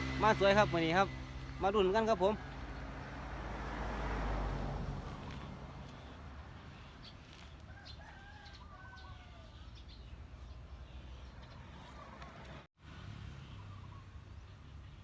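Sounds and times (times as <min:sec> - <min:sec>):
faint bird calls: 0:05.2 - 0:12.6, 0:13.3 - 0:15.0.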